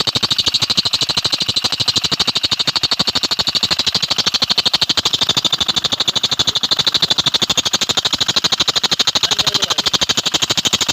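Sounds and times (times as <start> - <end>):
rapid ticking from engine pulley: 0.0 - 10.9
car engine idling: 3.5 - 10.9.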